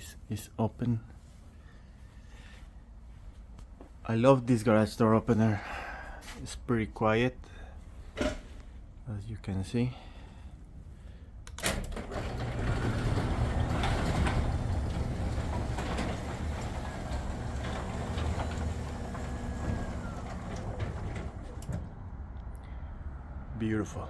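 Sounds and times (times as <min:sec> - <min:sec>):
garage door opener click: 0:11.5 - 0:22.0
garage door opener humming: 0:11.5 - 0:22.0.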